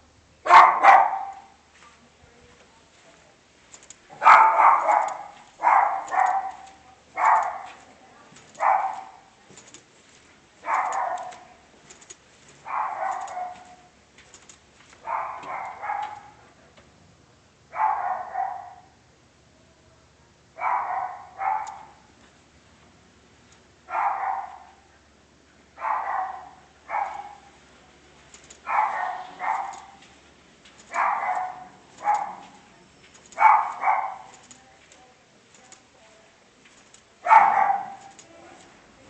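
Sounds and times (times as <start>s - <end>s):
dog barking: 0.4s - 1.6s, 4.1s - 7.9s, 8.5s - 9.4s, 10.6s - 11.6s, 12.6s - 13.9s, 15.0s - 16.4s, 17.7s - 19.0s, 20.6s - 22.1s, 23.8s - 24.9s, 25.8s - 27.6s, 28.6s - 30.1s, 30.8s - 34.5s, 37.2s - 38.6s.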